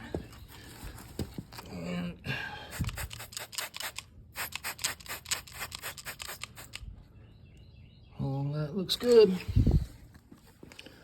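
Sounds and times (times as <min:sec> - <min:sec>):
spray bottle squirting: 0:02.7 - 0:06.8.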